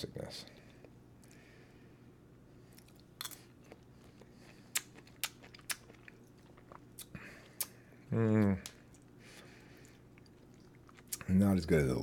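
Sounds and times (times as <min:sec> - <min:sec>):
person chewing: 0:02.6 - 0:11.3.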